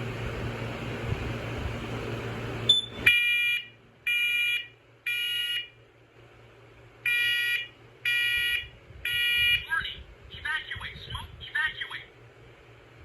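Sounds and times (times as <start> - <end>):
smoke alarm beeps: 2.7 - 5.7, 7.1 - 9.7.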